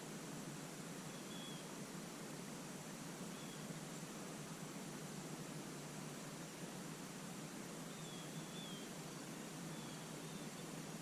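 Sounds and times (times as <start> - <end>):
faint steady hiss: 0.0 - 11.0
faint high-pitched chirp: 1.1 - 1.7, 3.3 - 3.7, 7.9 - 8.9, 9.7 - 10.7.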